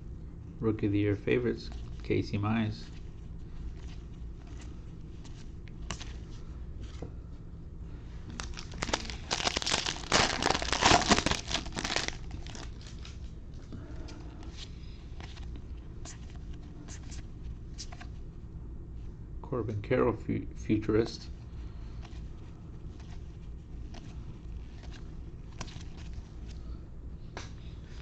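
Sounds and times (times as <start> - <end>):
cards clicking and rustling: 3.8 - 6.2, 8.3 - 13.3
wrapper crinkling and tearing: 8.3 - 13.2.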